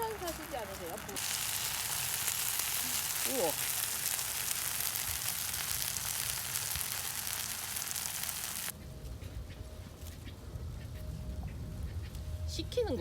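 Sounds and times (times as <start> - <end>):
rice sizzling in a hot pan: 0.0 - 8.7.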